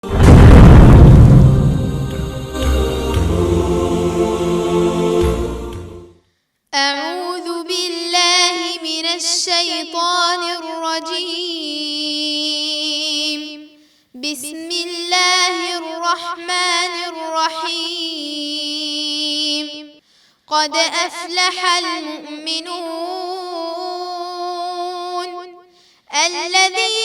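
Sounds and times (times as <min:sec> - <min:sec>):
deep booming intro sting: 0:00.0 - 0:06.1
girl reciting melodically: 0:06.8 - 0:27.0.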